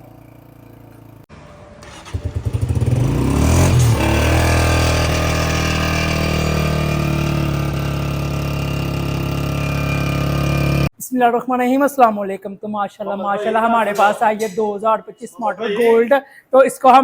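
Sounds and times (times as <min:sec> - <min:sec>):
motorcycle engine starting and idling: 0:00.0 - 0:10.9.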